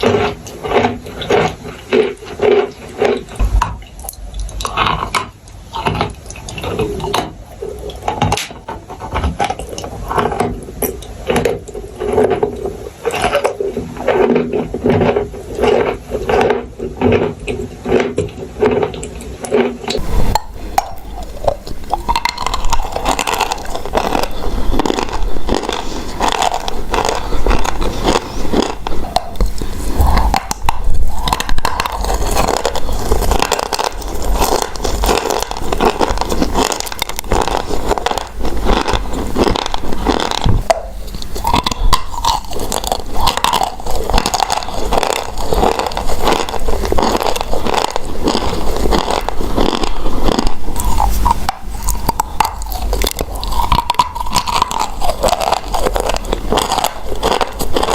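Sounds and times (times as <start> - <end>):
chalk and clay crunching: 19.9 - 57.9.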